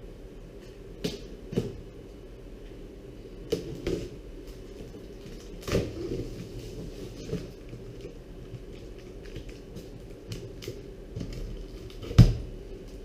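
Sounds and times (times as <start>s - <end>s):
cardboard and packing rustling: 3.6s - 13.0s.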